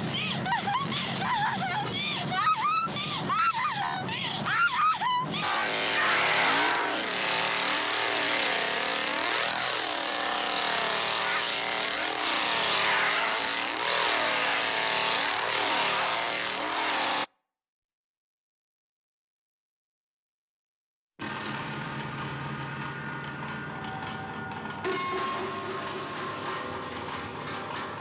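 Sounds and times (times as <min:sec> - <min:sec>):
woman screaming laughter: 0:00.0 - 0:05.8
chainsaw revving: 0:05.4 - 0:17.3.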